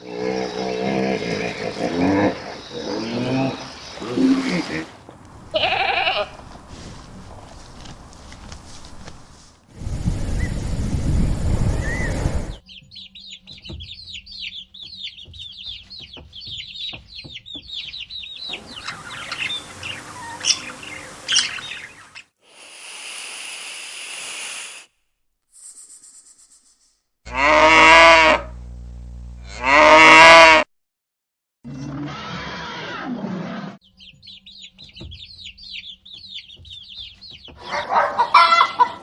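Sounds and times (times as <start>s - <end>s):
bird chirping: 0.0s - 4.6s, 9.8s - 22.3s, 33.8s - 38.4s
cow mooing: 0.0s - 4.9s, 27.3s - 28.5s, 29.4s - 30.6s
steady high buzz: 28.5s - 29.5s.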